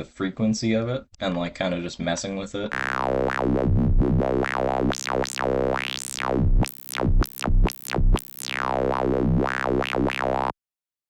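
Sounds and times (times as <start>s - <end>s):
squelchy synth wah: 2.7s - 10.5s.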